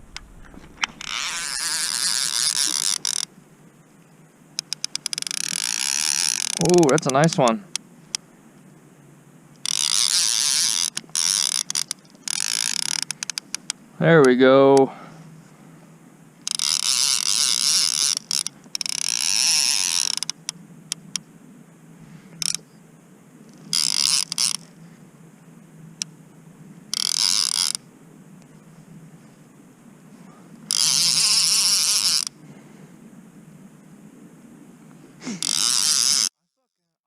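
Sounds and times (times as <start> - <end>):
fishing reel rattling: 0.0 - 3.3, 4.6 - 7.7, 9.6 - 13.8, 16.4 - 21.0, 22.4 - 22.6, 23.5 - 24.7, 26.9 - 27.8, 30.7 - 32.4, 35.3 - 36.4.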